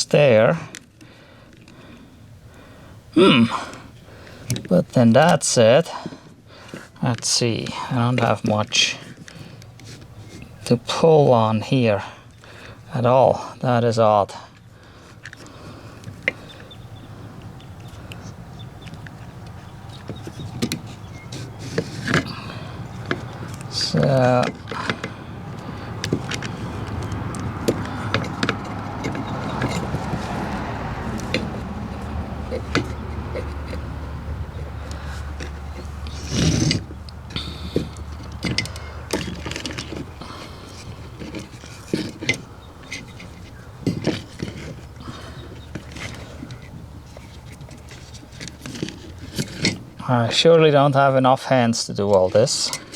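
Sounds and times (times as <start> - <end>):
steady low hum: 14.5 - 50.4
plastic parts clicking and rattling: 17.8 - 30.4, 31.0 - 49.9.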